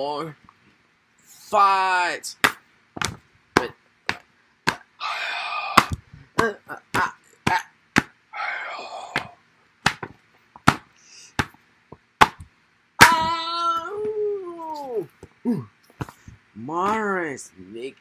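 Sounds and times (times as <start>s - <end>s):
sharp hit smacks: 2.4s - 4.9s, 5.7s - 8.2s, 9.1s - 11.6s.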